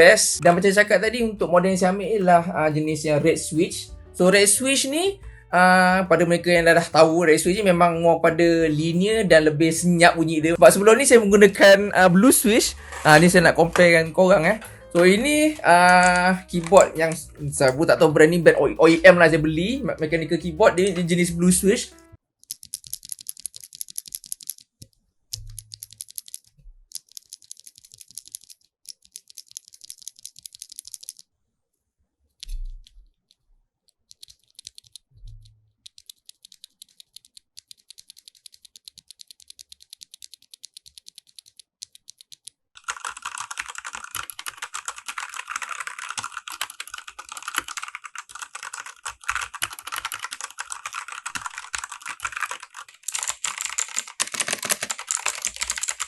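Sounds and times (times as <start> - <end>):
typing on mechanical keyboard: 10.6 - 18.0, 22.4 - 24.7, 25.4 - 31.2, 34.0 - 56.0.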